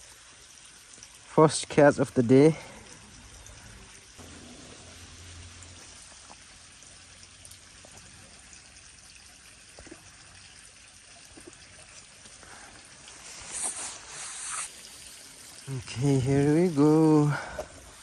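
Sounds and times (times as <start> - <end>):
trickle of running water: 0.0 - 18.0
short hiss: 12.5 - 18.0.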